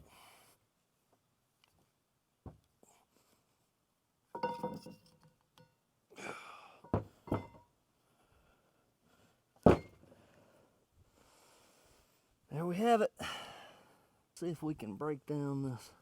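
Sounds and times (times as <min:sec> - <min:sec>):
metal knocking and clanking: 0:04.4 - 0:05.0.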